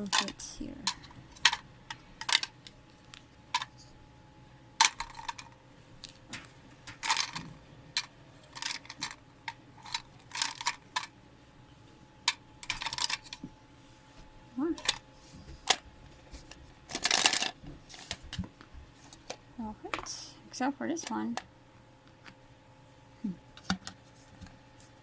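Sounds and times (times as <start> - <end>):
plastic pieces clattering: 0.0 - 3.7, 4.8 - 6.2, 6.9 - 9.2, 9.8 - 11.1, 12.3 - 13.4, 16.9 - 18.2.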